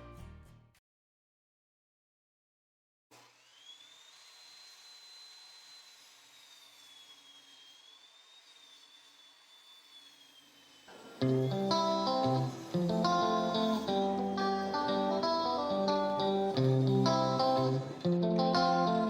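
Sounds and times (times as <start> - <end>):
thin high whine: 6.9 - 19.0.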